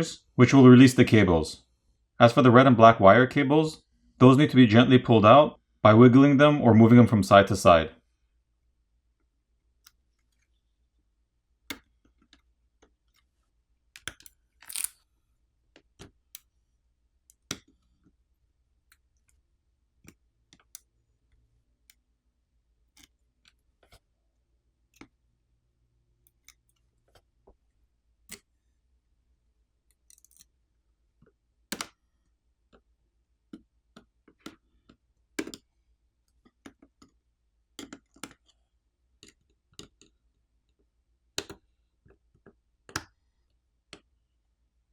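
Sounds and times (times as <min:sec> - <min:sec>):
tools clicking and tapping: 0:14.0 - 0:15.0, 0:29.9 - 0:30.5.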